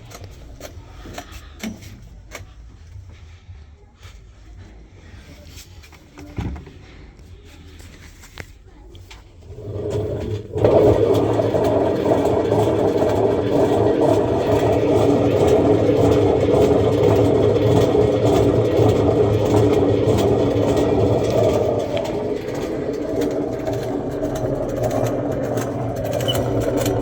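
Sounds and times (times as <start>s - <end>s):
washing machine drum rumbling: 9.4s - 27.0s.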